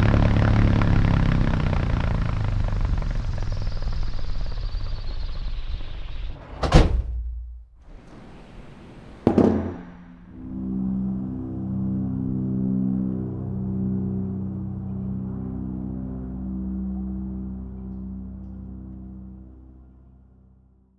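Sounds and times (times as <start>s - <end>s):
loud thumps: 7.9s - 10.7s
propeller engines droning: 7.9s - 14.9s.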